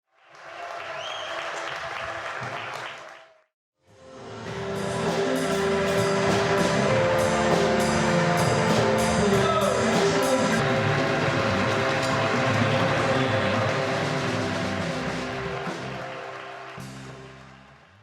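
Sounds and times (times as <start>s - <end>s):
steady beat of strikes: 4.5s - 16.0s.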